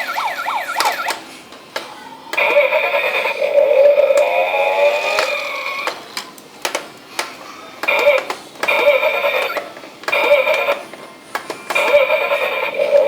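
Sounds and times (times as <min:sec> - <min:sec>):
electronic siren-like tone: 0:00.0 - 0:01.1
clicks: 0:00.0 - 0:02.6.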